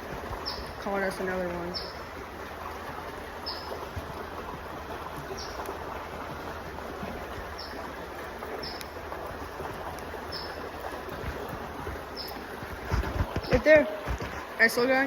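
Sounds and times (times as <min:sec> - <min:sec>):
creek water running: 0:00.0 - 0:15.0
bird chirping: 0:00.4 - 0:00.8, 0:01.7 - 0:02.0, 0:12.2 - 0:12.4.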